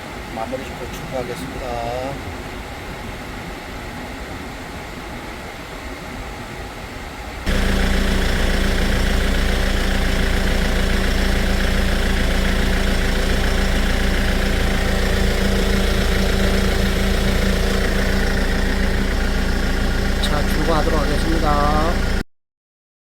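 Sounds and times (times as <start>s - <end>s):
steady low hum: 7.5s - 22.2s
truck engine idling: 7.5s - 22.2s.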